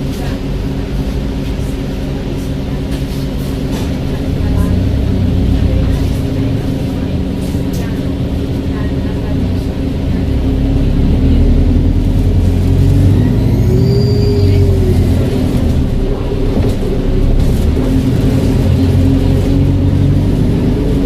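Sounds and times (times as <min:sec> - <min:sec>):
bus drivetrain drone: 0:00.0 - 0:21.0.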